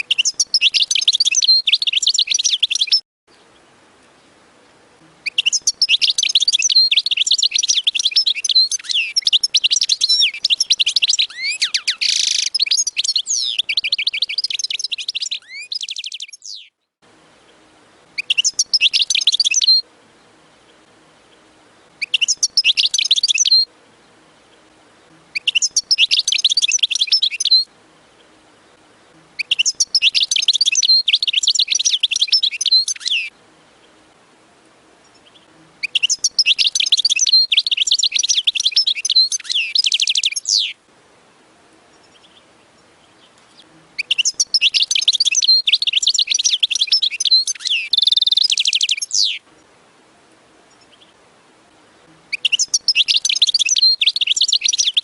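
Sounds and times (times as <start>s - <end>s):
bird trill: 0.0s - 3.0s, 5.2s - 16.8s, 18.2s - 19.8s, 22.0s - 23.7s, 25.4s - 27.7s, 29.4s - 33.4s, 35.0s - 40.8s, 43.2s - 49.4s, 52.3s - 55.0s
finch twittering: 5.2s - 16.7s, 18.2s - 19.8s, 22.0s - 23.6s, 25.4s - 27.6s, 43.2s - 49.4s, 52.3s - 55.0s.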